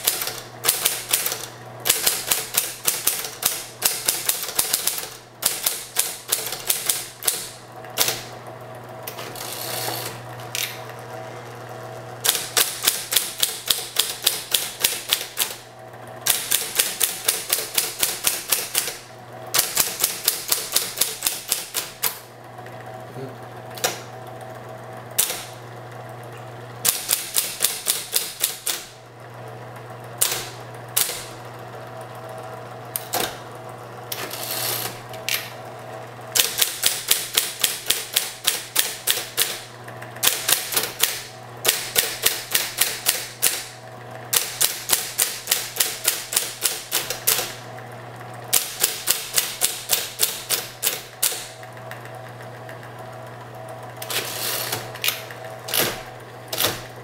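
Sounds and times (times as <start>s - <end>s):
typewriter key strikes: 0.0s - 8.2s, 16.3s - 19.0s, 19.6s - 22.2s, 26.9s - 28.8s, 44.4s - 47.5s, 48.6s - 51.5s
typewriter motor hum: 0.0s - 57.0s.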